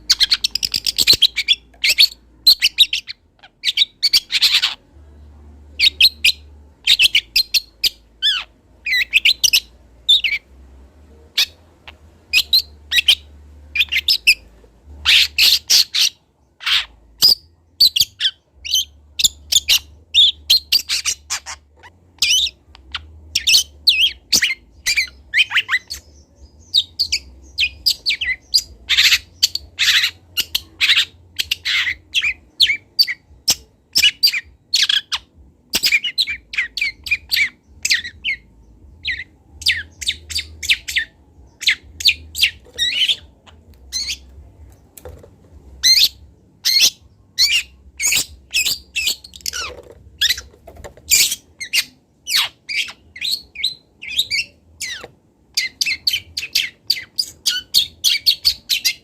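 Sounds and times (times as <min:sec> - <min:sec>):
bird chirping song: 0:00.0 - 0:59.0.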